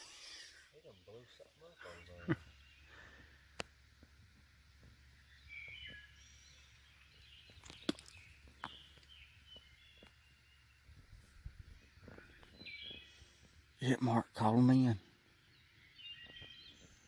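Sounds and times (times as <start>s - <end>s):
faint bird chirps: 5.0s - 17.0s.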